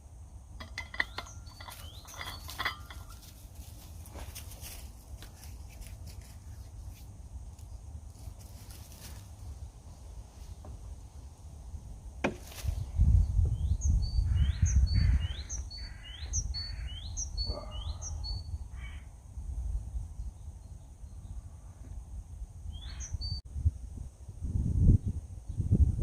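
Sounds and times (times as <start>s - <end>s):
bird calling: 14.1s - 19.1s.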